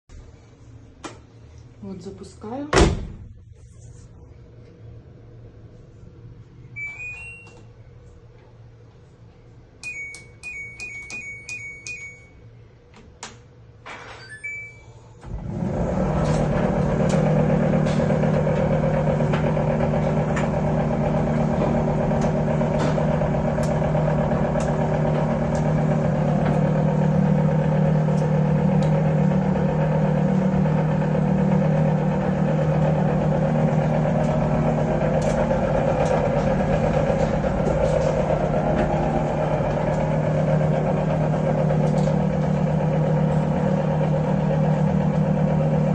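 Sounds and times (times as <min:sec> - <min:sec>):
tumble dryer humming: 0:15.2 - 0:45.9.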